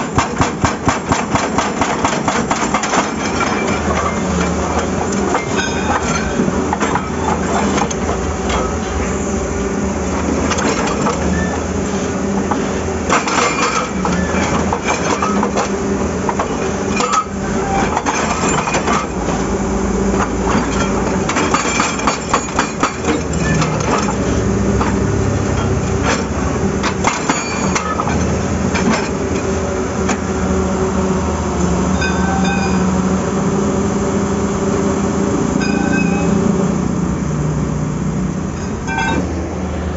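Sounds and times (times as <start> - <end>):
hydraulic breaker hammering rock: 0.0 - 8.7, 12.4 - 19.4, 20.1 - 29.5
diesel engine running: 0.0 - 39.9.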